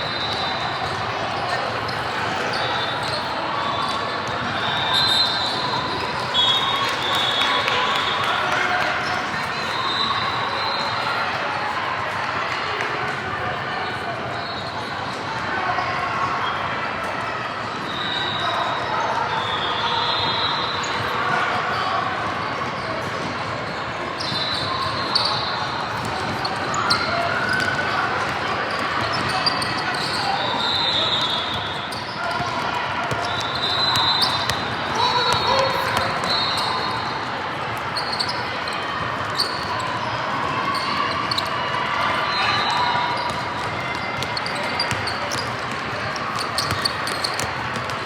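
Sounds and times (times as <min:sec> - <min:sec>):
sneakers squeaking on floor: 0:00.0 - 0:08.2, 0:24.2 - 0:48.0
crowd chatter: 0:00.0 - 0:48.0
spectators' voices echoing: 0:00.0 - 0:48.0.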